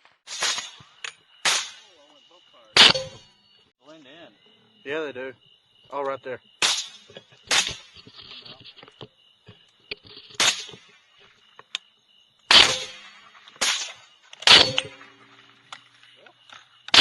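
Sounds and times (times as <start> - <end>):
rifle shots: 2.8 - 3.2, 6.6 - 7.9, 12.5 - 15.2.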